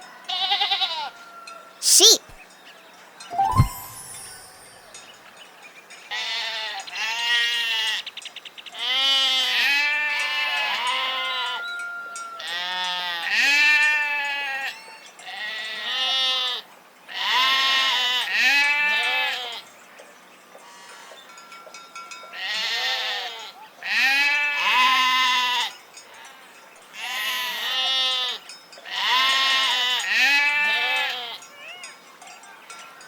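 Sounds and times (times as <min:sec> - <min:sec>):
sheep bleating: 0:28.9 - 0:31.4.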